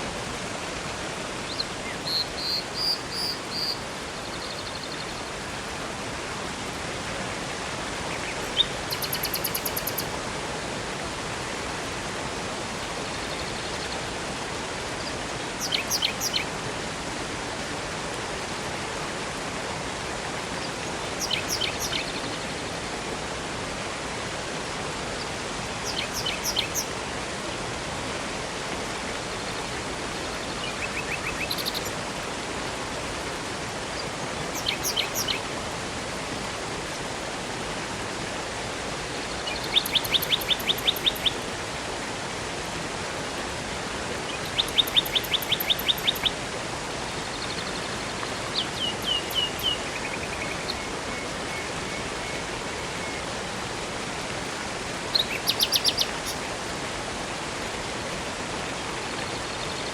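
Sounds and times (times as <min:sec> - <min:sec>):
rushing river water: 0:00.0 - 0:59.9
songbird chirping: 0:01.5 - 0:03.8, 0:08.1 - 0:10.1, 0:15.6 - 0:16.5, 0:21.2 - 0:22.4, 0:25.8 - 0:27.0, 0:30.7 - 0:32.0, 0:34.6 - 0:35.4, 0:39.4 - 0:41.4, 0:44.4 - 0:46.3, 0:48.5 - 0:51.3, 0:55.1 - 0:56.4.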